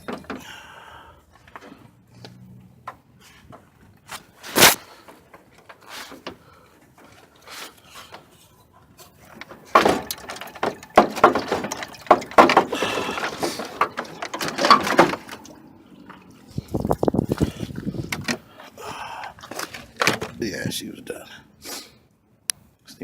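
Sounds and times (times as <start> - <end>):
metal clunks and scraping: 0.0 - 0.6, 1.4 - 20.4
radiator clattering and rattling: 8.9 - 15.6.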